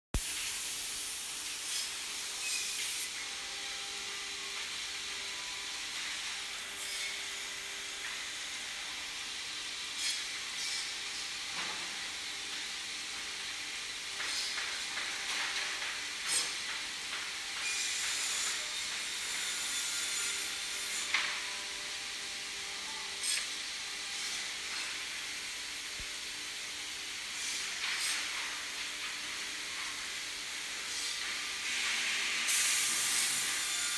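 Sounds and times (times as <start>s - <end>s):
boring machine hissing: 17.6s - 33.9s.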